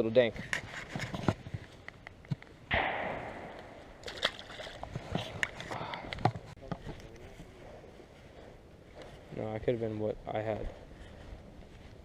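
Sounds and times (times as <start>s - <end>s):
water sloshing: 3.6s - 5.8s.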